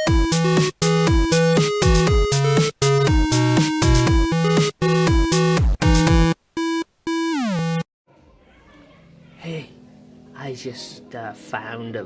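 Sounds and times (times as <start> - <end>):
electronic music with kick drum: 0.0 - 7.8.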